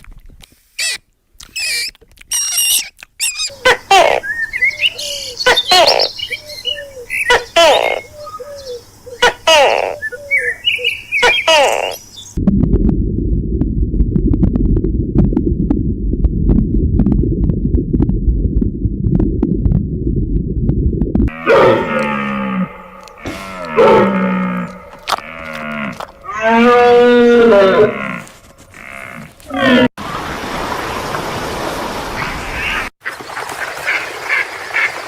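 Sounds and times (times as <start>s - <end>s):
low rumbling noise: 12.3s - 26.6s
cows mooing: 21.3s - 29.9s.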